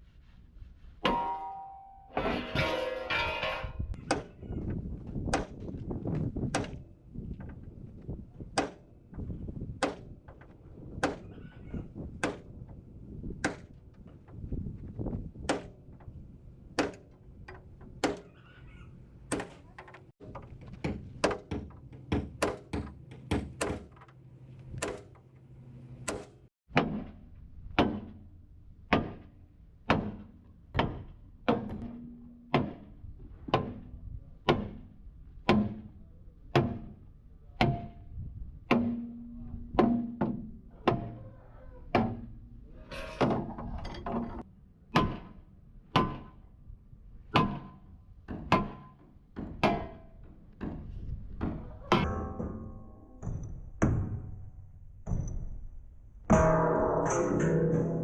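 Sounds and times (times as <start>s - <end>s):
hammer striking steel: 1.0s - 4.4s, 52.0s - 54.4s, 56.3s - 58.0s.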